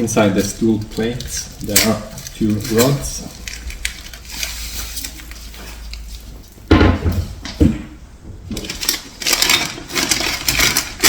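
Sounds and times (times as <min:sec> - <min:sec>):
heavy knocks: 0:06.7 - 0:08.4.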